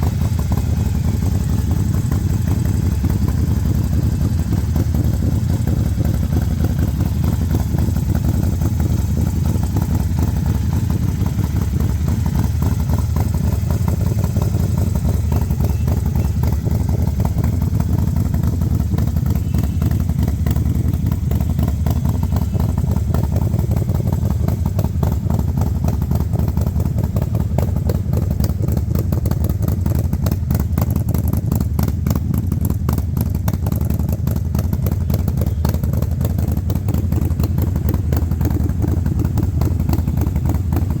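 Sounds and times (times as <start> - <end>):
motorcycle engine idling: 0.0 - 41.0.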